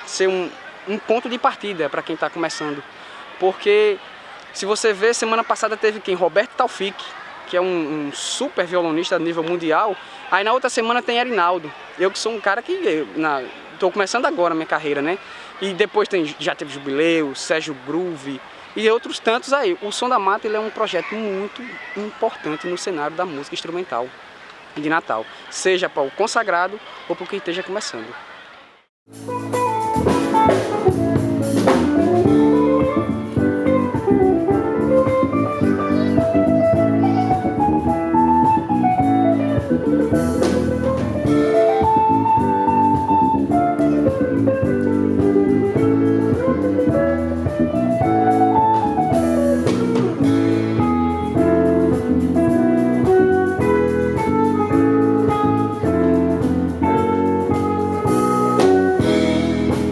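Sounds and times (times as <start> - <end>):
drum kit groove: 29.1 - 59.9.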